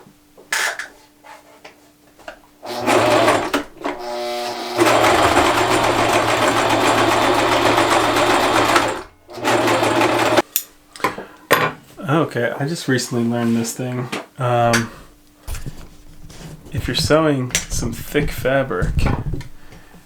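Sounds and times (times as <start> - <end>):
sewing machine stitching: 2.6 - 10.4.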